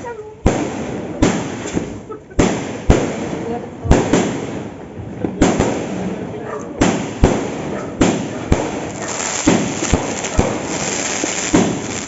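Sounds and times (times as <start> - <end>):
firework bangs: 0.4 - 12.0
firework crackle: 6.8 - 12.0.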